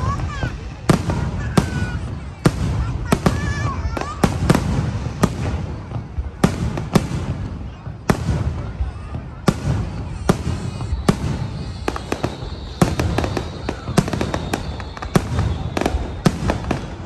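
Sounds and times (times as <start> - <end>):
firework whistle: 0.0 - 17.0
fireworks bangs: 0.0 - 17.0.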